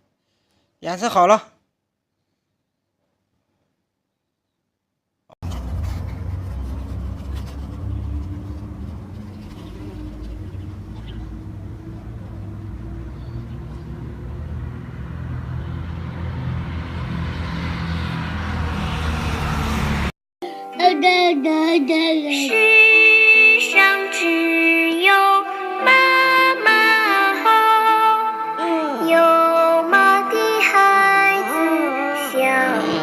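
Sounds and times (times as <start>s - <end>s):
low rumble with hum: 5.4s - 19.9s.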